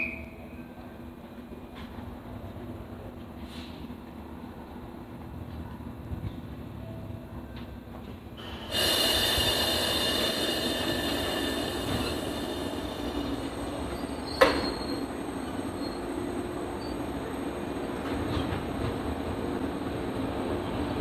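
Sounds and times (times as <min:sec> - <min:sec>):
train running gear rumble: 0:00.2 - 0:21.0
train wheels squealing: 0:08.4 - 0:17.2.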